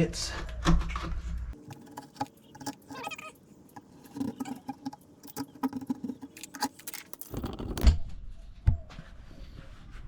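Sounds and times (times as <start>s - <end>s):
screwdriver scraping window frame: 1.6s - 7.8s.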